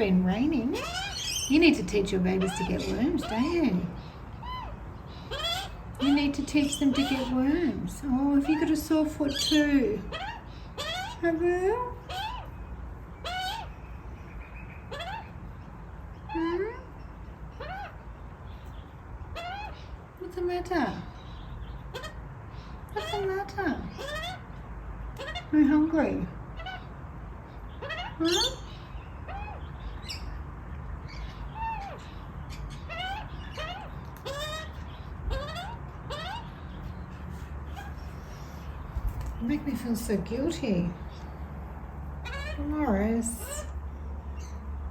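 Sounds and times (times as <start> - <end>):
young magpie begging calls: 0.0 - 12.6, 13.2 - 13.8, 14.7 - 15.4, 20.6 - 24.6, 27.7 - 30.4, 31.1 - 36.8, 42.2 - 43.7.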